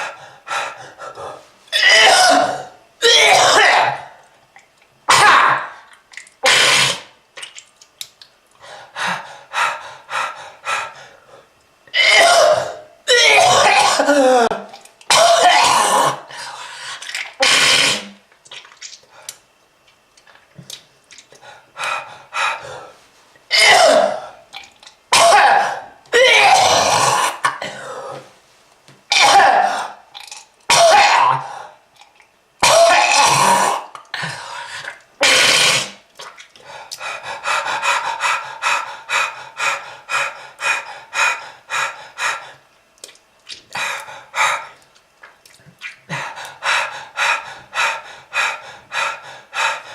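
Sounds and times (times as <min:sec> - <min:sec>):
person coughing and hacking: 0:01.8 - 0:04.0, 0:11.9 - 0:16.2, 0:23.5 - 0:24.2, 0:25.1 - 0:27.8, 0:29.1 - 0:30.0, 0:30.7 - 0:31.4, 0:32.6 - 0:33.9.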